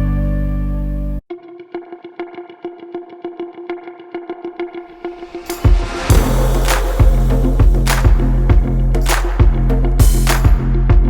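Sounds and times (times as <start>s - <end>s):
r and b music with drum beat: 5.4s - 11.0s.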